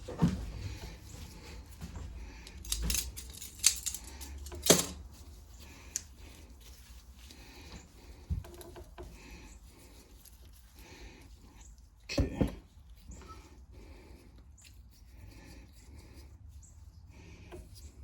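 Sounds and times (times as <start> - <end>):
metallic clicks of small parts and tools: 2.4 - 5.0.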